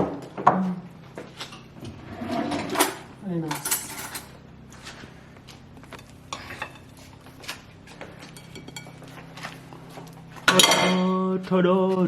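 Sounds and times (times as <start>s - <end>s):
faint hum: 0.0s - 12.0s
cutlery clinking on dishes: 8.3s - 9.1s, 10.5s - 11.1s.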